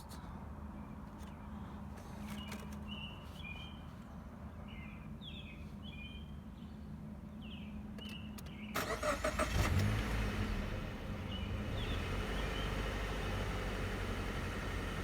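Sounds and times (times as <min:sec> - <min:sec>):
small birds chirping: 0:00.6 - 0:08.8, 0:11.2 - 0:13.0.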